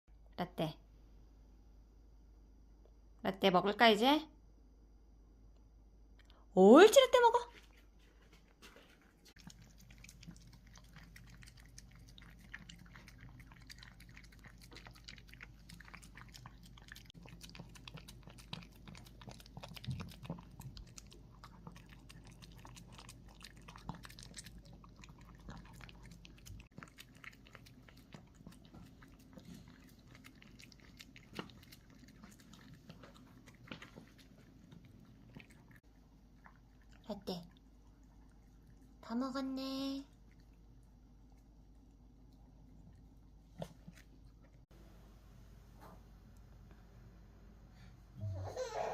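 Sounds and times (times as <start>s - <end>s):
dog chewing food: 7.6s - 39.0s.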